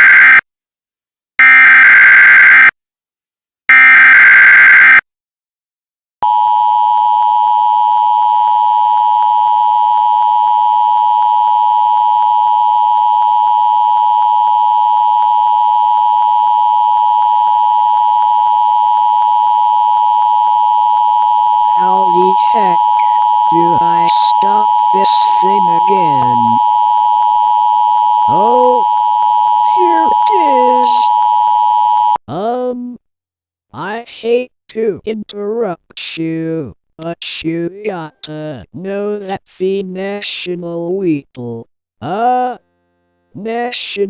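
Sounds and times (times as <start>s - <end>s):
two-tone attention signal: 6.2s - 32.2s
data bursts: 8.6s - 32.2s.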